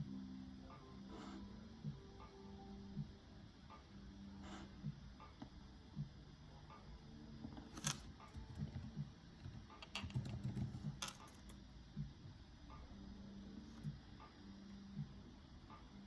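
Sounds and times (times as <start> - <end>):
computer keyboard typing: 7.8 - 11.6.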